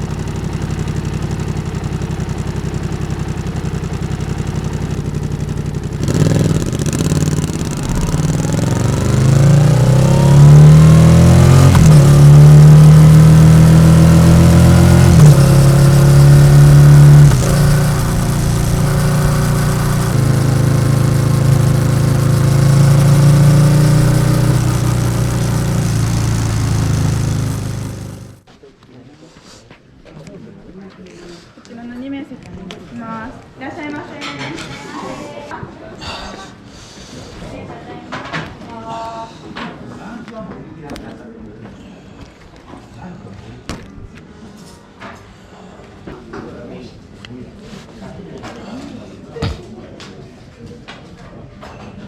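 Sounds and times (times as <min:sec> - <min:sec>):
motorcycle engine revving: 0:00.0 - 0:28.4.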